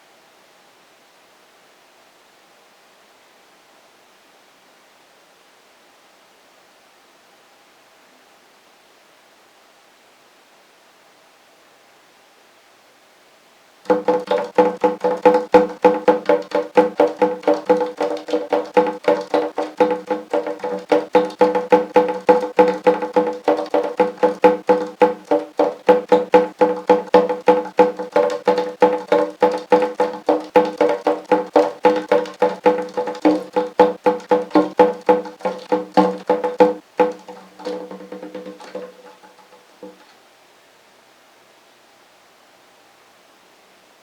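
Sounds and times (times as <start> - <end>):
background music with clicking beat: 13.9 - 40.0.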